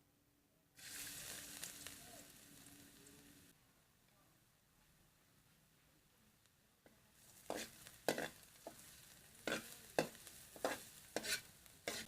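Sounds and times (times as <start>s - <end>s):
food sizzling in oil: 0.8s - 3.5s, 7.1s - 12.0s
utensil scraping a pan: 7.2s - 12.0s.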